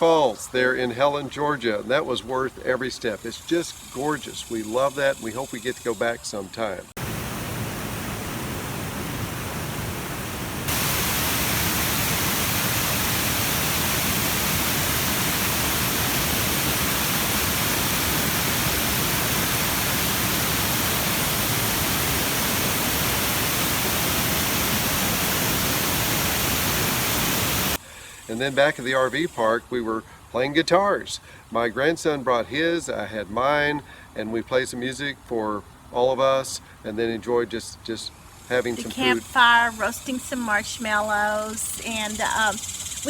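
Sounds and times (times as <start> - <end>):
waterfall roaring: 7.0 - 27.8.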